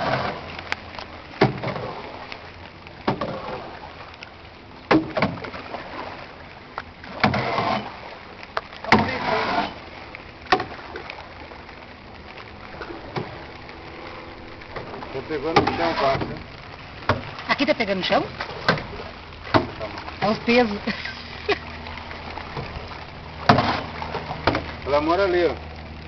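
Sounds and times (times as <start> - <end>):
water swishing: 0.0 - 26.0
knocks against boat hull: 4.9 - 5.5, 19.5 - 19.8, 23.4 - 24.7.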